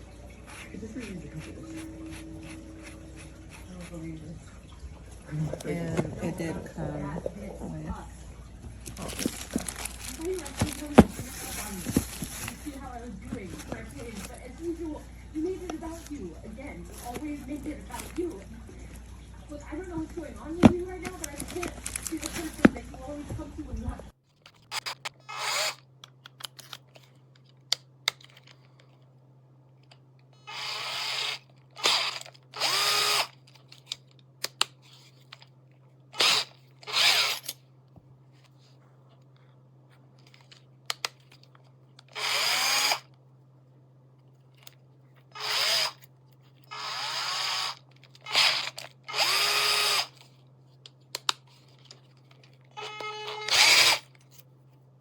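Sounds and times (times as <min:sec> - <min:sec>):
steady low hum: 0:00.0 - 0:55.0
cordless drill motor whirring: 0:08.7 - 0:14.8, 0:16.9 - 0:18.4, 0:24.6 - 0:25.9, 0:30.4 - 0:33.5, 0:36.2 - 0:37.5, 0:42.0 - 0:43.1, 0:45.3 - 0:46.0, 0:46.6 - 0:50.3, 0:52.7 - 0:54.2.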